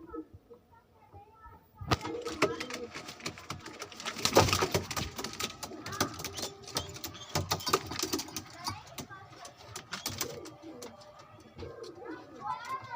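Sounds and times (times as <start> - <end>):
pigeons cooing: 0.0 - 0.6, 2.0 - 12.9
sharp clicks and knocks: 1.9 - 11.0.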